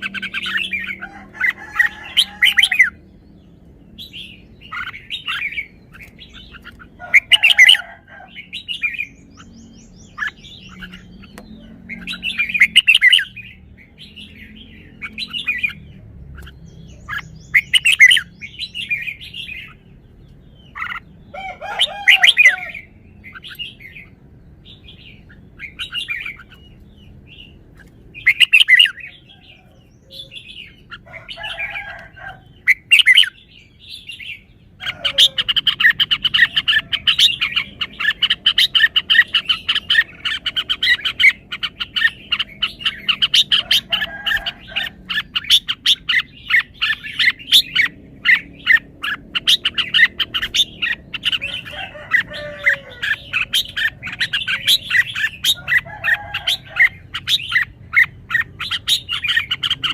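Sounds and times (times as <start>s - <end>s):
bird singing rapid chirps: 0.0s - 59.9s.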